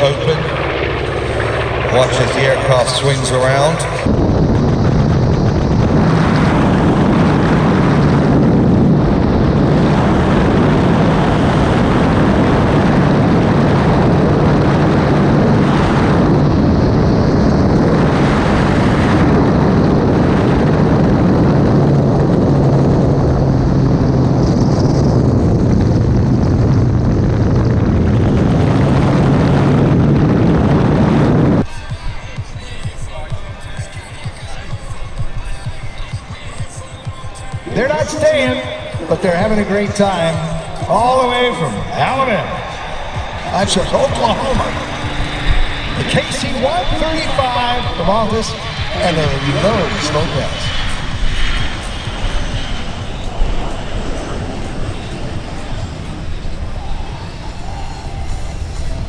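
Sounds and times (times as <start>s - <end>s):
propeller aircraft engines droning: 0.0s - 59.0s.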